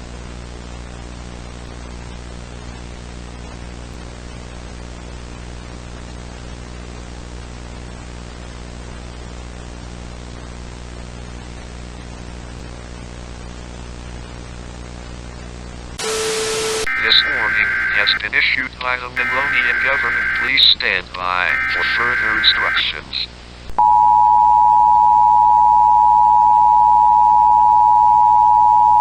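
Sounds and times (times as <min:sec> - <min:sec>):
static hiss: 0:16.0 - 0:23.8
low electrical hum: 0:16.9 - 0:23.8.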